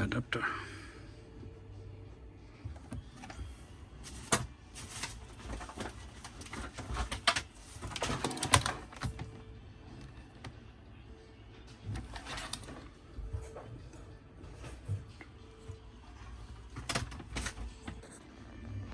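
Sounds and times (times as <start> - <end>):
rustling: 4.0 - 9.2.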